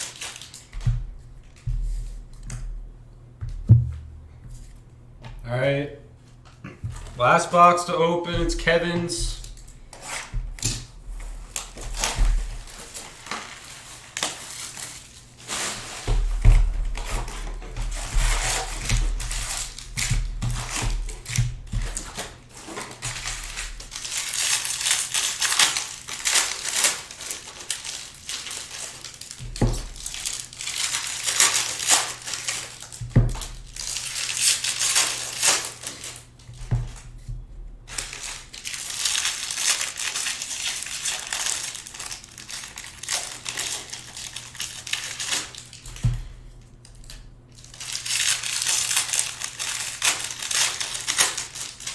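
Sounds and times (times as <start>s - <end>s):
wrappers crinkling and tearing: 0.0s - 2.6s, 6.3s - 37.3s, 37.9s - 51.9s
soft knocks: 3.4s - 4.6s.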